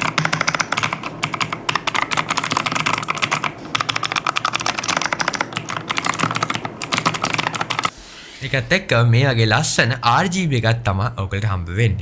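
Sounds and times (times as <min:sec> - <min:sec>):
clicky keyboard typing: 0:00.0 - 0:07.9.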